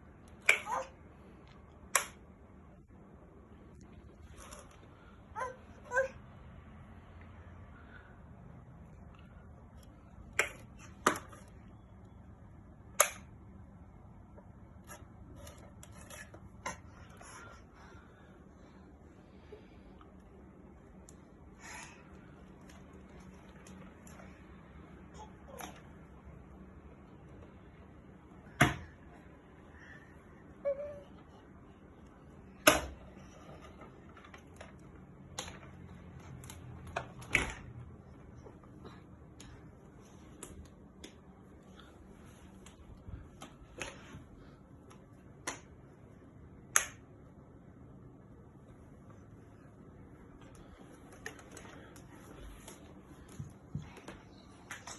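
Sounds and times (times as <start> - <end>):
low steady hum: 0.0 - 54.9.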